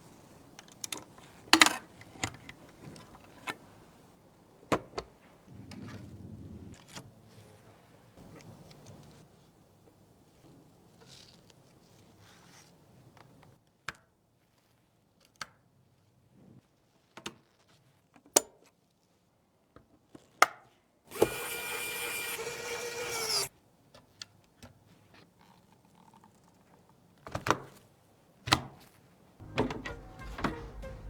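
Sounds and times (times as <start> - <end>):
electric screwdriver whirring: 21.1 - 23.5.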